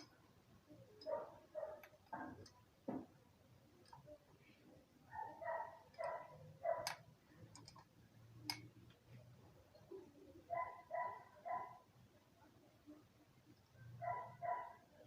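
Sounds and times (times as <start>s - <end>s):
sharp metallic clicks: 6.8s - 8.7s.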